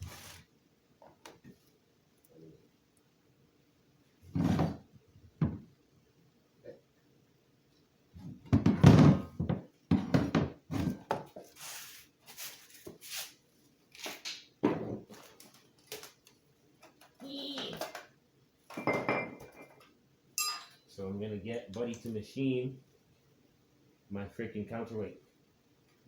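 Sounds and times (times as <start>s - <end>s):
objects set down on hard surface: 14.6s - 15.4s, 18.7s - 19.8s.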